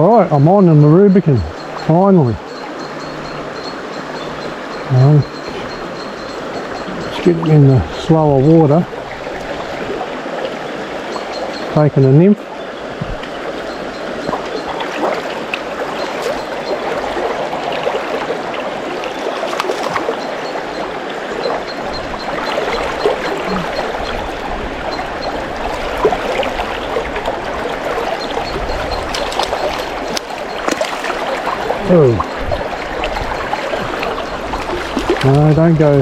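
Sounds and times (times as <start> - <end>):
river water rushing over rocks: 12.4 - 36.0.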